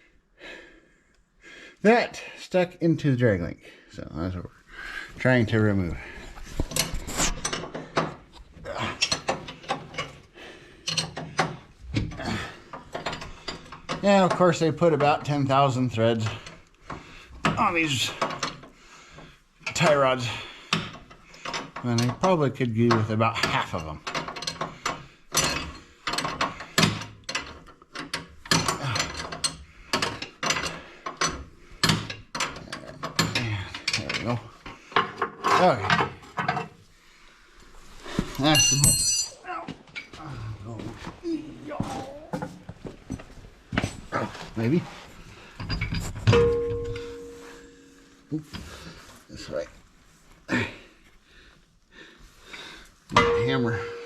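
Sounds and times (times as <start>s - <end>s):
hand tools clicking on metal: 10.8s - 11.6s.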